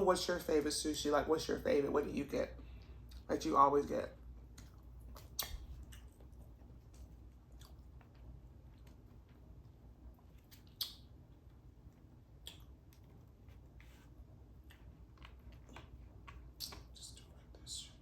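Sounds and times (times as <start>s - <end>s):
person chewing food: 4.4s - 18.0s.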